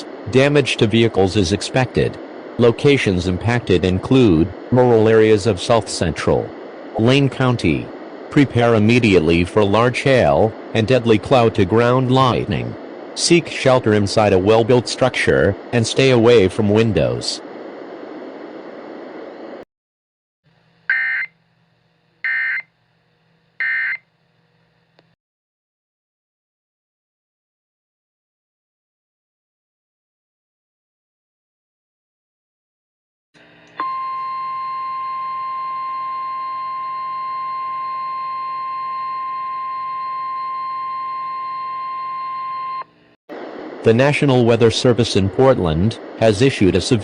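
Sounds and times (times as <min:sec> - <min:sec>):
steady alarm tone: 0:20.9 - 0:21.3, 0:22.2 - 0:22.7, 0:23.6 - 0:24.0, 0:33.8 - 0:42.9
screechy digital data tones: 0:23.6 - 0:24.0.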